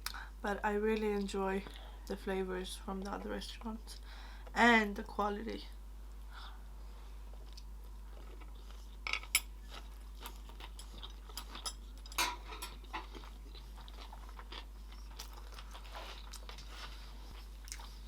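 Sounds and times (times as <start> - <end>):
crunchy food being chewed: 7.3 - 18.0.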